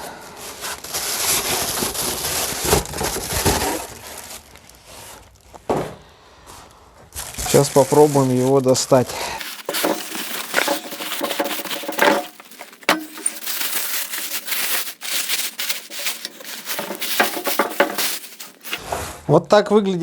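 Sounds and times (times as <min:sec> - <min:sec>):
cardboard box crunching: 0:09.4 - 0:18.8.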